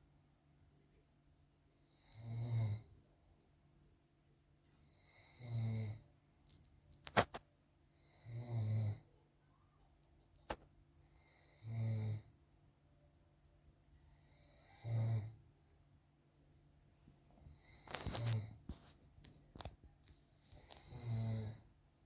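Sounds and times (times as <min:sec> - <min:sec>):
man snoring: 0:01.9 - 0:02.9, 0:05.0 - 0:06.0, 0:08.0 - 0:09.1, 0:11.2 - 0:12.3, 0:14.3 - 0:15.4, 0:20.8 - 0:21.6.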